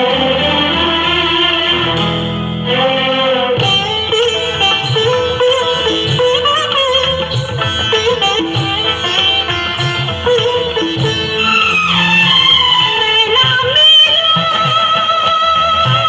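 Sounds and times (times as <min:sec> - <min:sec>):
string instrument melody: 0:00.0 - 0:16.0
percussion beat: 0:03.6 - 0:16.0.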